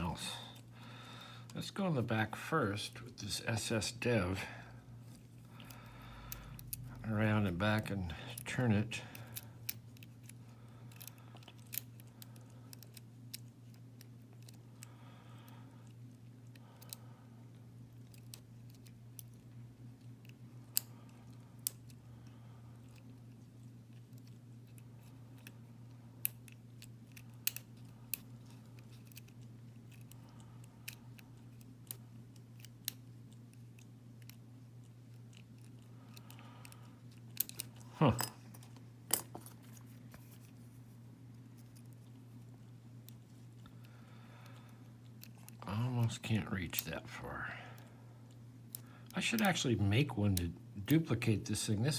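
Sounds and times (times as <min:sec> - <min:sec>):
steady low hum: 0:00.0 - 0:51.9.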